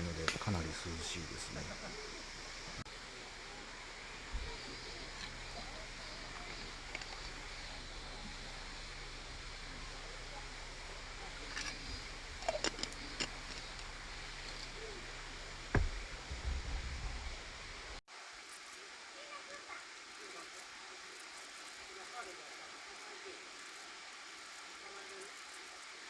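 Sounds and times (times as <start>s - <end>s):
outdoor background hiss: 0.0s - 26.0s
dull thump: 15.7s - 17.2s.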